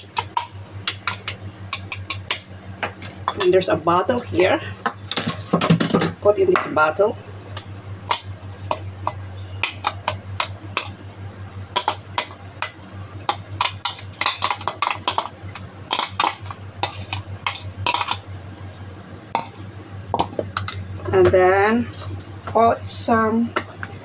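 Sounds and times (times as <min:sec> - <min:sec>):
steady low hum: 0:00.0 - 0:24.0
spoon scraping and clinking: 0:13.6 - 0:18.2.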